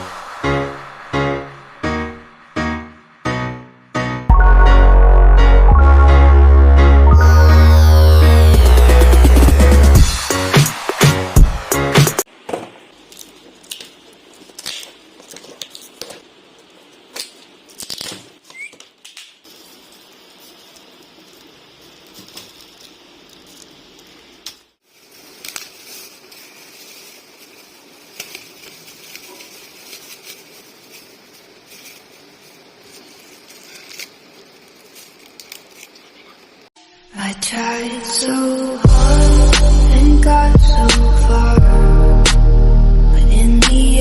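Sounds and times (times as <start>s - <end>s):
low room hiss: 12.2s - 44.0s
packaging rustling: 24.8s - 36.3s.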